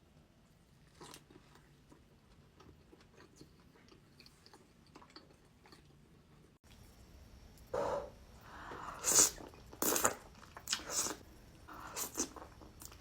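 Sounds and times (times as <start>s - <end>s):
faint chewing: 0.5s - 6.9s.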